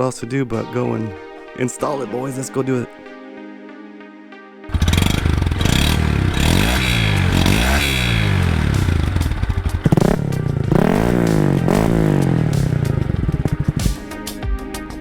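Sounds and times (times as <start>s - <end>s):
motorcycle engine revving: 4.7s - 14.0s.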